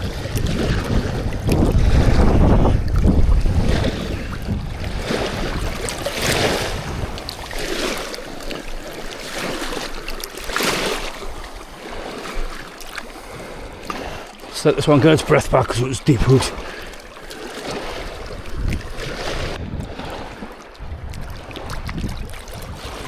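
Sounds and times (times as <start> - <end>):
wind buffeting microphone: 0.0 - 8.1, 17.6 - 23.0
water lapping at bank: 0.0 - 23.0.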